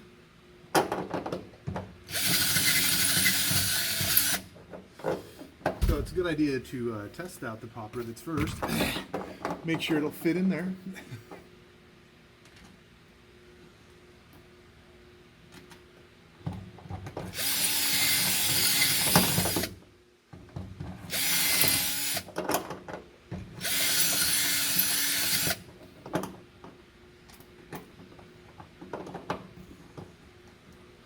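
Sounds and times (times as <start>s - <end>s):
power drill drilling: 2.1s - 4.4s, 17.4s - 19.7s, 21.1s - 22.3s, 23.6s - 25.6s.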